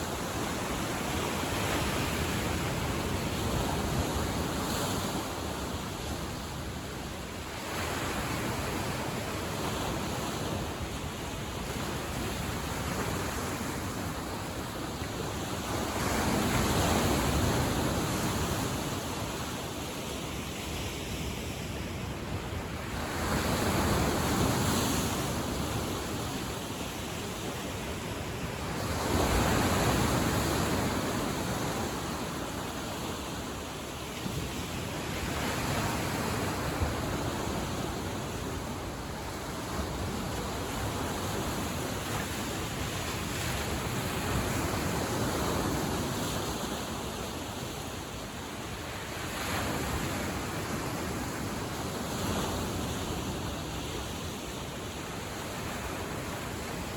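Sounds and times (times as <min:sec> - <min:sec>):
waves washing onto shore: 0:00.0 - 0:56.9.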